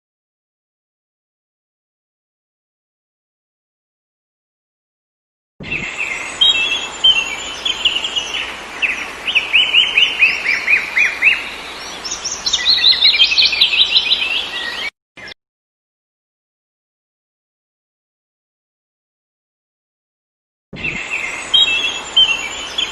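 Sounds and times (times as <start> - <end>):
songbirds chirping and singing: 5.6 - 15.4, 20.8 - 22.9
steady hiss: 5.7 - 14.9, 20.9 - 22.9.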